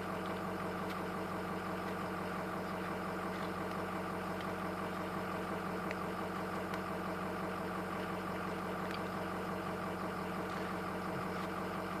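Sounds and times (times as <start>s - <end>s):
pickup engine idling: 0.0s - 12.0s.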